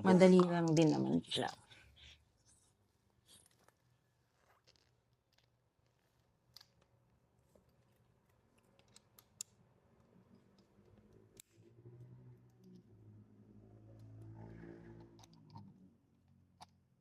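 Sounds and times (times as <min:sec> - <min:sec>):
small metal parts clicking: 0:08.6 - 0:09.6.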